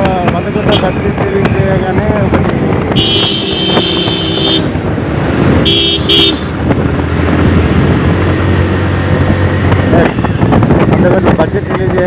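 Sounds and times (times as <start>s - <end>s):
motorcycle engine rumble: 0.0s - 12.0s
vehicle horn blasts: 3.0s - 4.7s, 5.6s - 6.5s.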